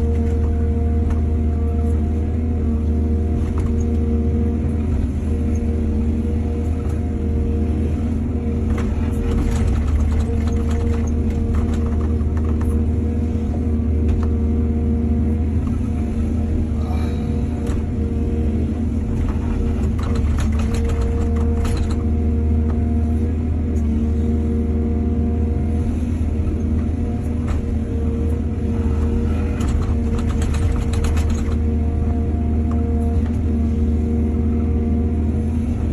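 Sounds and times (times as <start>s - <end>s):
excavator diesel engine running: 0.0s - 35.9s.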